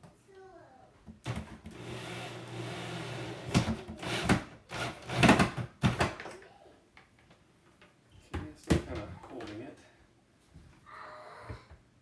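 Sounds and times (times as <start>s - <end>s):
cordless drill driving screw: 1.7s - 5.5s.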